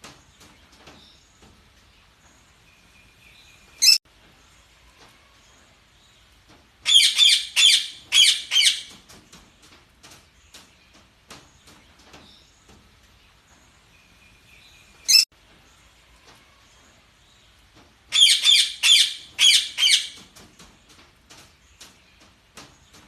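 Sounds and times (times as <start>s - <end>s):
parakeets chirping and warbling: 3.6s - 4.0s, 6.8s - 9.0s, 14.9s - 15.3s, 18.1s - 20.2s.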